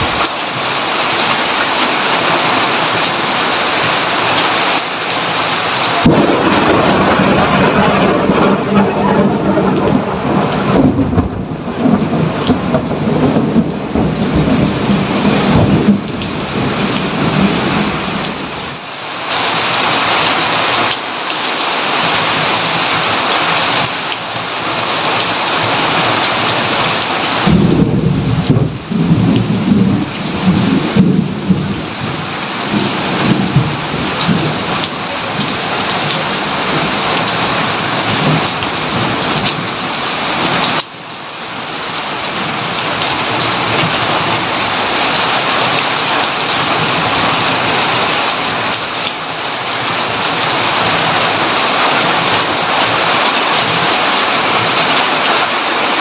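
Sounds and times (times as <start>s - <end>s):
heavy rain: 0.0s - 56.0s
thunder rumbling: 5.4s - 18.8s, 25.6s - 40.8s.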